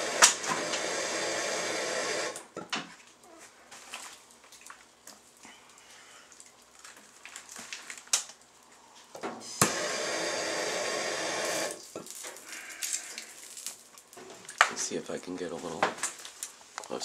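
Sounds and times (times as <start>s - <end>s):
torch flame hissing: 0.0s - 2.4s, 9.4s - 14.3s
torch clicking alight: 0.0s - 2.5s, 9.6s - 12.2s.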